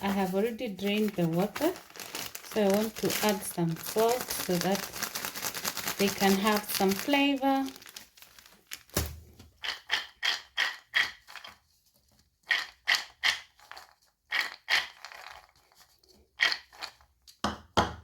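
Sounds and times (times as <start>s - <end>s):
peanuts crunching and scraping: 0.0s - 9.0s, 12.4s - 17.2s.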